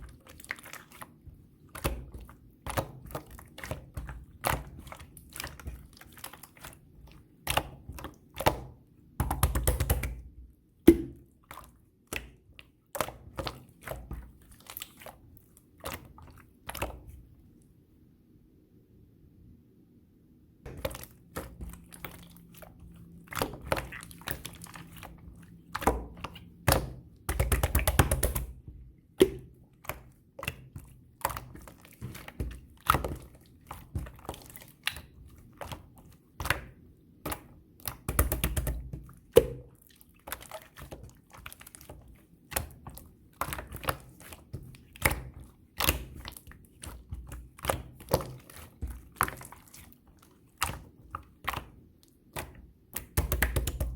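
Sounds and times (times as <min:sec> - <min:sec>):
slime squishing and popping: 0:20.7 - 0:53.9.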